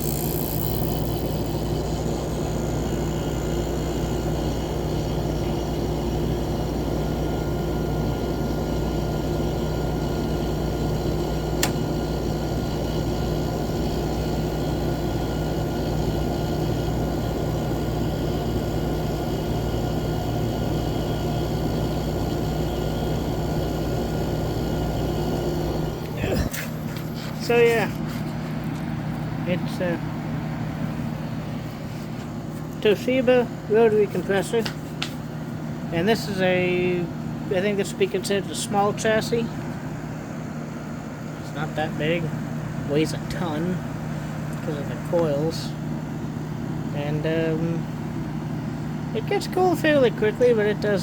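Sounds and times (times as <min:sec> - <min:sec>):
air conditioner humming: 0:00.0 - 0:51.0
sharp click: 0:11.6 - 0:11.8.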